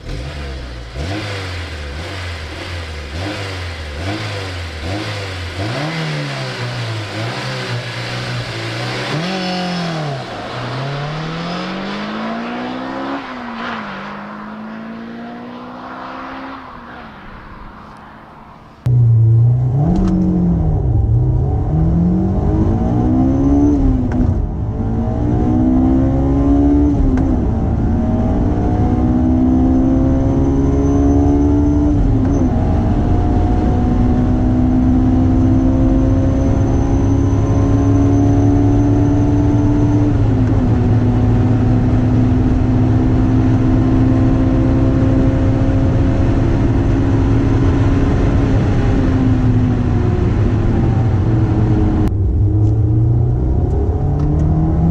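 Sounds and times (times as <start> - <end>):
car engine accelerating through gears: 0.0 - 54.9
low rumble: 10.2 - 23.2, 49.2 - 54.9.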